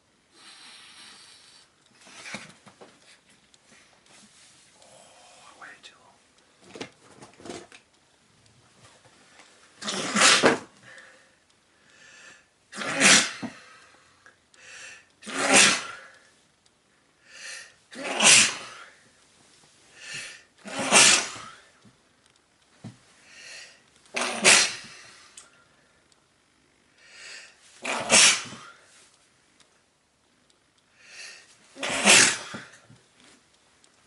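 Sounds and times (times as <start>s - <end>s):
person sneezing: 9.8s - 10.7s, 12.7s - 13.6s, 15.2s - 16.1s, 17.9s - 18.9s, 20.6s - 21.6s, 24.1s - 25.0s, 27.8s - 28.8s, 31.8s - 32.8s.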